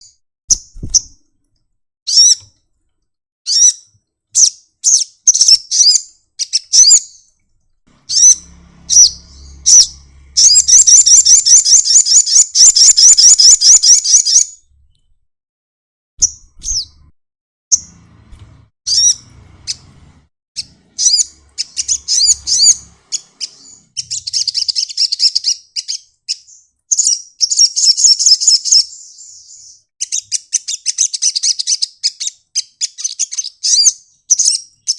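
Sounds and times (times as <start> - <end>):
bird chirping and trilling: 2.1 - 2.5, 3.5 - 7.4, 8.0 - 14.6, 16.2 - 17.1, 18.9 - 19.9, 20.6 - 34.9.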